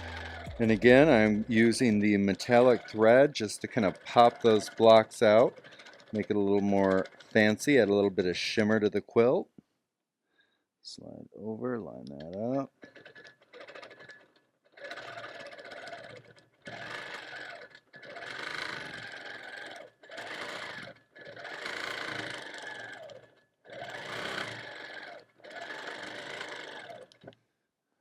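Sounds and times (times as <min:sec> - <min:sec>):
high motor whine: 0:00.0 - 0:03.4
quilting machine stitching: 0:00.0 - 0:08.9, 0:12.8 - 0:27.3.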